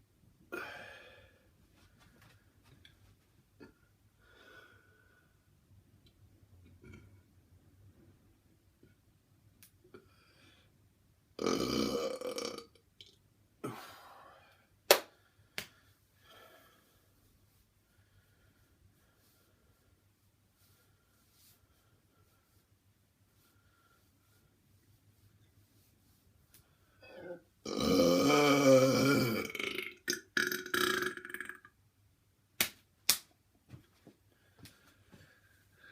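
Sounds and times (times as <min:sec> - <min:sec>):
man belching: 0:11.4 - 0:12.8, 0:27.2 - 0:31.7
man burping loudly: 0:11.4 - 0:12.8, 0:27.2 - 0:31.7.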